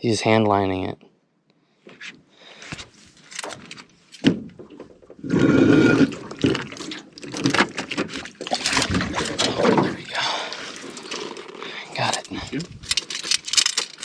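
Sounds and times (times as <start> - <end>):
water splashing and sloshing: 3.5 - 14.0.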